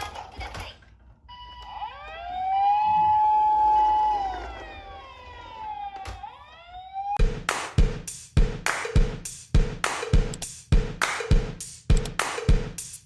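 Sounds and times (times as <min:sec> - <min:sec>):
fainter siren tones: 0:01.2 - 0:07.2
wailing siren: 0:01.3 - 0:07.2.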